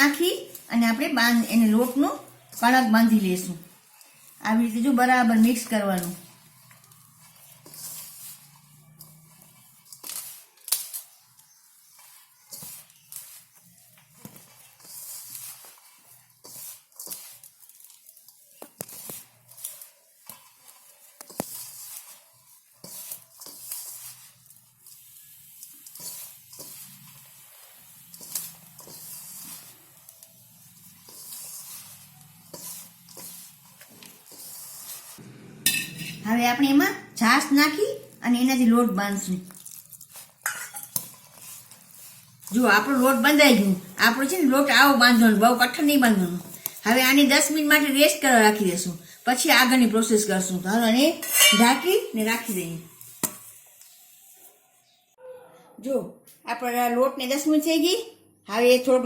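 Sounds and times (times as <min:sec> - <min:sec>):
hands mixing flour in a bowl: 0:00.0 - 0:55.0.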